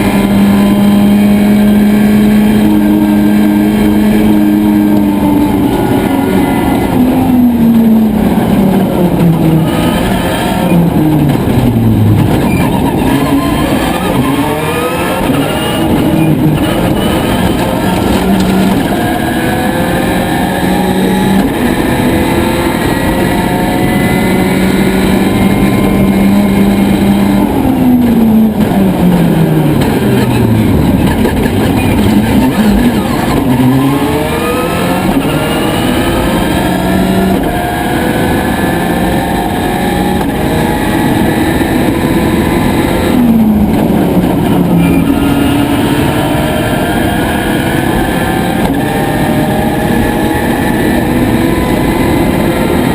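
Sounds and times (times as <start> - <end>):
rally car engine revving: 0.0 - 52.9.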